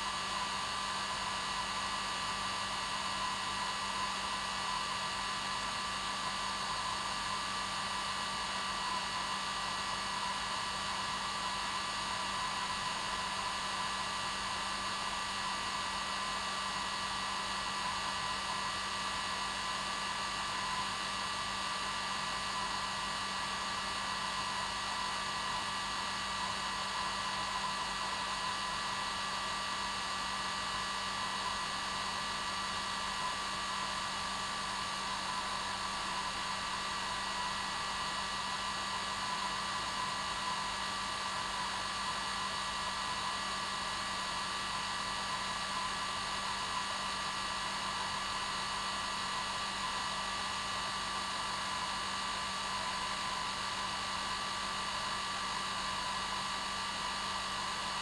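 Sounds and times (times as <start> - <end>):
hair dryer running: 31.2 - 58.0.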